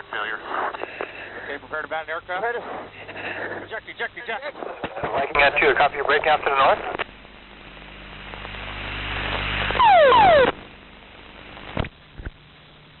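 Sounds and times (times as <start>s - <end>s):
faint steady hum: 0.0s - 13.0s
loud burst with falling tones: 9.7s - 10.6s.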